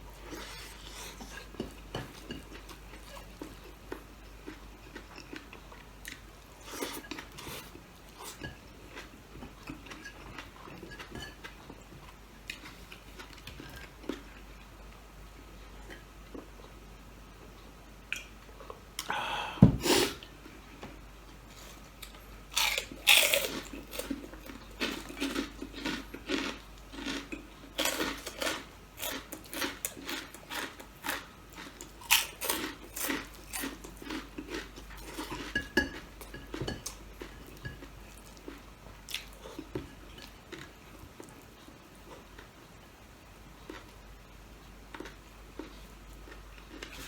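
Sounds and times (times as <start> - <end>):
person crunching food: 22.5 - 35.6.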